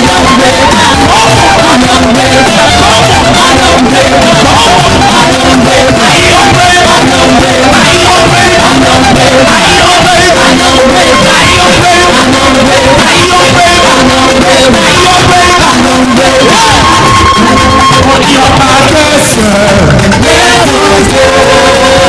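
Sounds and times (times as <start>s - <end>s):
band playing praise music: 0.0s - 22.0s
voices singing held notes: 0.0s - 22.0s.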